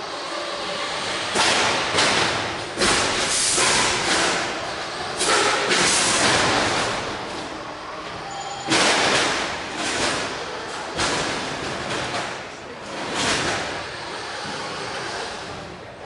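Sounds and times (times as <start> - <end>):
combat robots bursts and thuds: 5.2 - 7.2.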